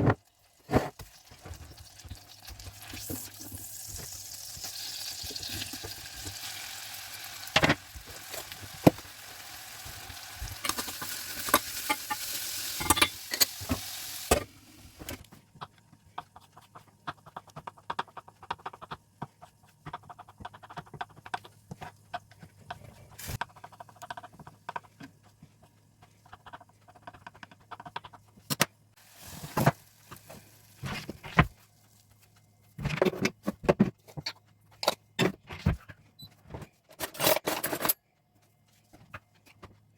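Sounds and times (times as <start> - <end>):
dumplings sizzling in oil: 0.2 - 15.0, 29.0 - 32.0.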